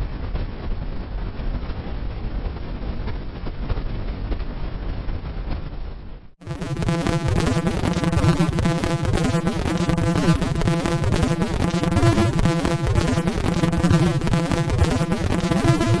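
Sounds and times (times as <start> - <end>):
buzzy synthesizer drone: 6.4 - 16.0.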